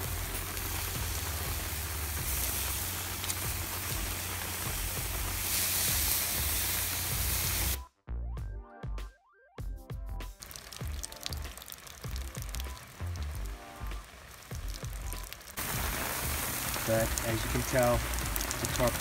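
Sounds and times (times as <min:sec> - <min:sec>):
meat sizzling on a grill: 0:00.0 - 0:07.8, 0:10.4 - 0:19.0
music: 0:00.0 - 0:19.0.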